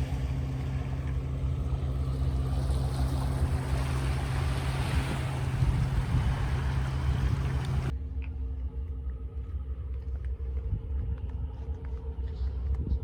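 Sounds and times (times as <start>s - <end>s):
hiss of wind and surf: 0.0s - 7.9s
wind buffeting microphone: 0.0s - 7.9s
faint steady hum: 0.0s - 12.9s.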